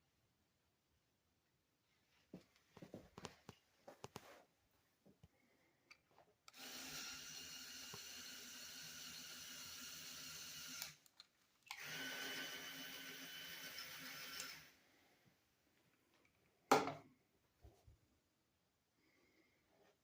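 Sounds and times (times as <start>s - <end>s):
small electric motor whining: 6.5s - 11.0s, 11.7s - 14.7s.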